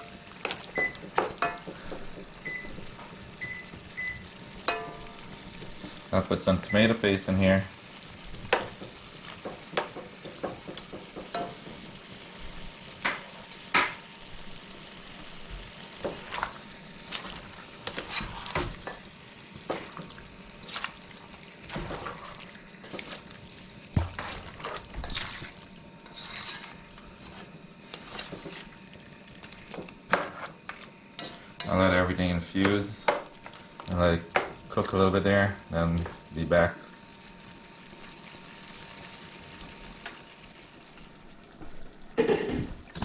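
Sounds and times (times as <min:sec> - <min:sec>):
food sizzling in a pot: 0:00.0 - 0:43.0
spoon scraping and knocking pot: 0:26.1 - 0:28.6.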